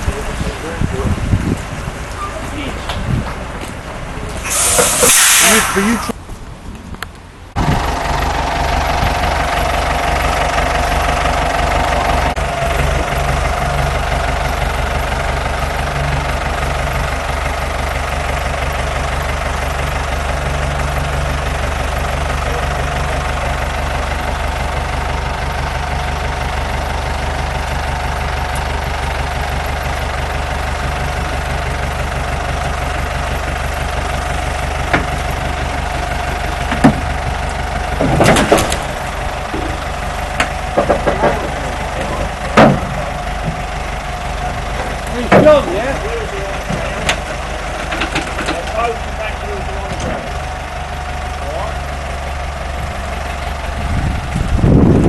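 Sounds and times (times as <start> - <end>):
vehicle engine running with whine: 7.0 - 55.0.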